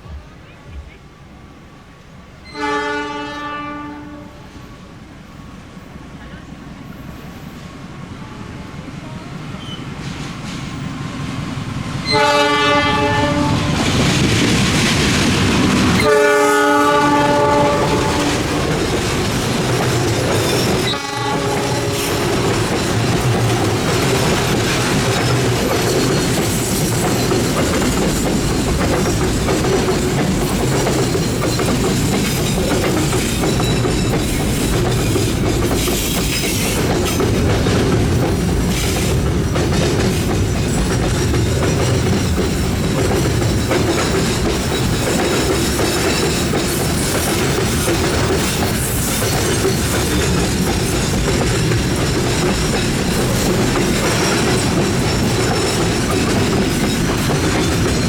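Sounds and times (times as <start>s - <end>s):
train wheels clicking over rail joints: 12.1s - 58.0s.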